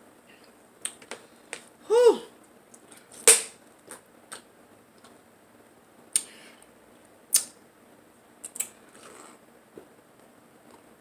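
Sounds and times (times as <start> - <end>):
eating clicks and smacks: 7.3 - 7.6, 8.4 - 9.1.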